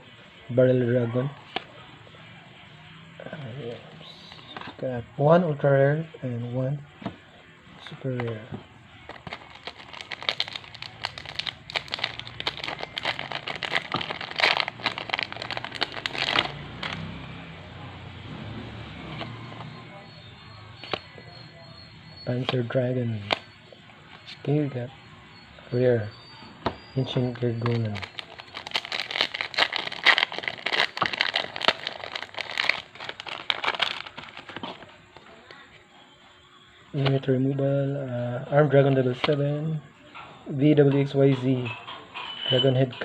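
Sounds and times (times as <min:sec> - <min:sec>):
foil wrapper crinkling: 0:09.1 - 0:17.0, 0:27.6 - 0:35.0.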